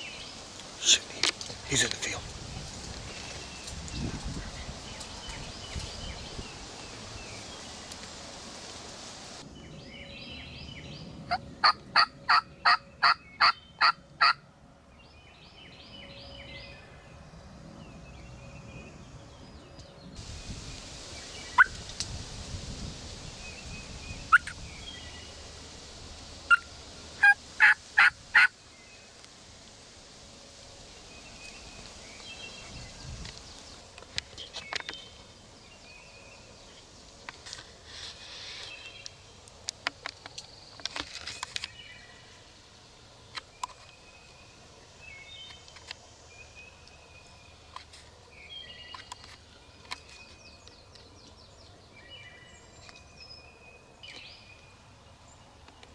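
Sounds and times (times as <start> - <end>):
turkey clucks: 11.6 - 14.4, 26.5 - 28.5
turkey yelping: 26.5 - 28.5.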